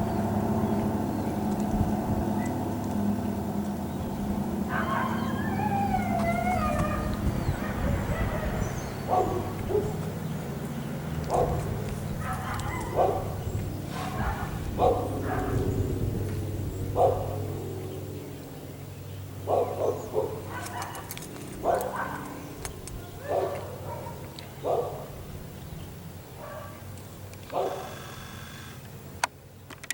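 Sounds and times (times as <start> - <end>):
dog barking: 4.7 - 10.0, 11.3 - 15.7, 17.0 - 17.4, 19.5 - 25.2, 26.4 - 26.9, 27.5 - 27.9.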